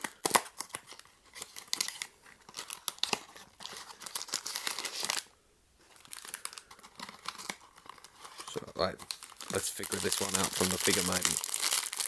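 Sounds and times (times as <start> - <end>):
packaging crinkling: 0.0 - 12.0
cardboard tearing: 7.0 - 12.0.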